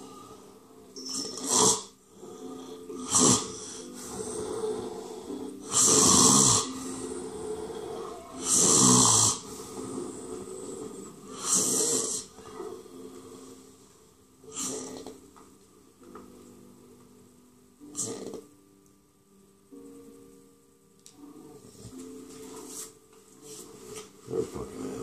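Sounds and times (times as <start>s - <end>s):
person snoring: 1.0s - 13.6s, 14.4s - 15.2s, 17.8s - 18.5s.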